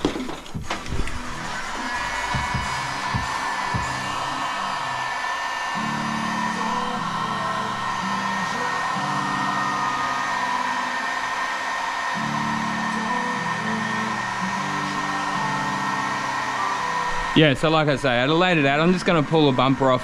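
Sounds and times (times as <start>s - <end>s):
music with low notes: 0.0s - 5.0s
heat gun blowing with high whine: 0.3s - 20.0s.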